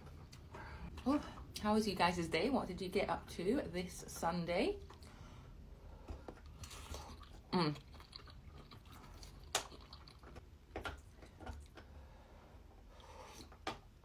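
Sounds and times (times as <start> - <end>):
chewing noodles: 6.4 - 10.4.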